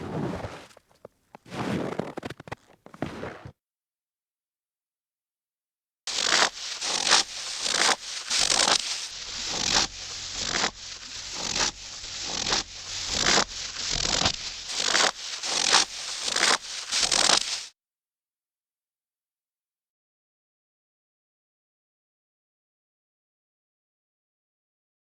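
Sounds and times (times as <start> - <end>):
footsteps crunching through snow: 0.0 - 3.5, 6.1 - 17.7.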